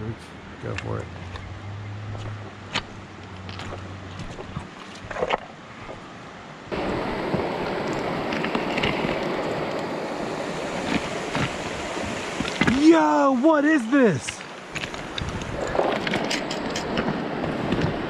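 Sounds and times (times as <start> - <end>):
creek water rushing: 0.3 - 18.0
small clicks and splashes: 2.1 - 6.0, 10.7 - 13.0, 13.7 - 17.1.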